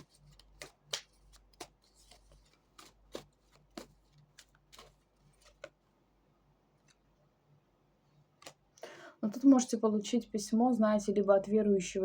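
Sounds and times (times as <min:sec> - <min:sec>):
cards shuffled flicks and taps: 0:00.0 - 0:05.8.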